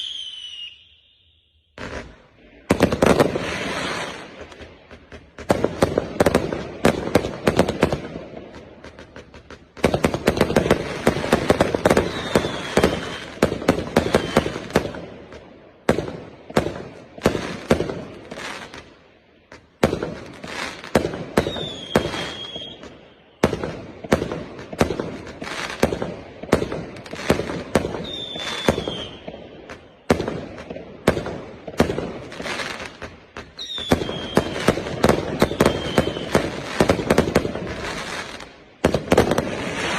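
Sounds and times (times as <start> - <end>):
high falling whistles: 0.0 - 1.8, 12.1 - 13.3, 21.4 - 22.9, 28.0 - 29.3, 35.5 - 36.4
fireworks cracking in volleys: 0.0 - 39.9.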